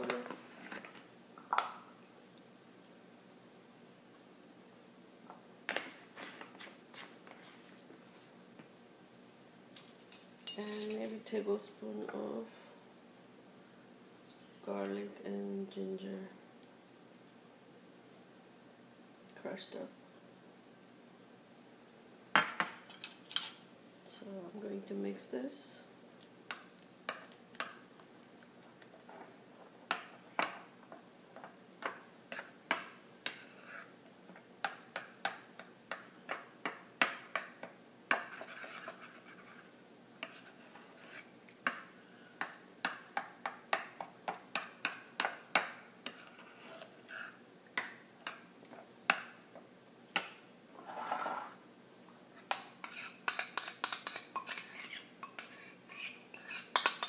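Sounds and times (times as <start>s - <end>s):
scraping in bowl: 38.3s - 41.3s, 50.8s - 51.6s, 52.8s - 57.0s.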